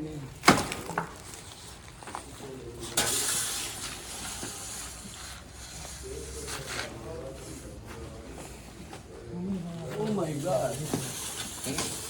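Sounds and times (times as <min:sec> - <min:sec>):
hiss: 0:03.0 - 0:05.8, 0:10.4 - 0:12.0.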